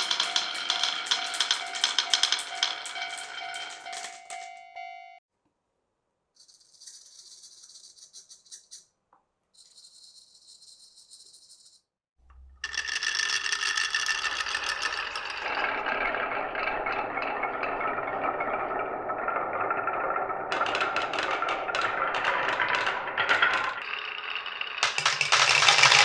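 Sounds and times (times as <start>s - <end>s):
marbles rattling down track: 0.0s - 4.5s, 12.4s - 26.0s.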